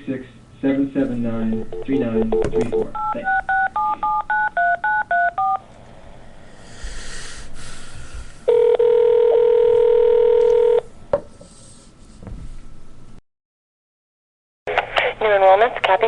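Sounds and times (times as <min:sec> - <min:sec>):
touch-tone keypad beeps: 0:01.7 - 0:05.6
clicks on phone line: 0:08.5 - 0:10.8.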